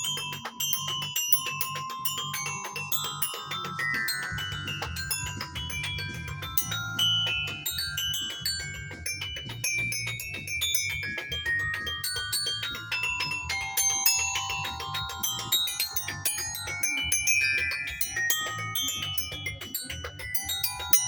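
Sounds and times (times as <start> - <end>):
mallet percussion played fast: 0.0 - 21.0.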